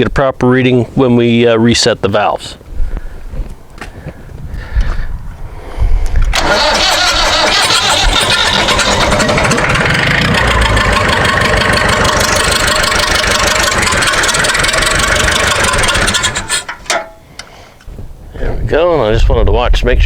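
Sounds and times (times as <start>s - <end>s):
tractor engine starting and running: 6.2s - 17.5s.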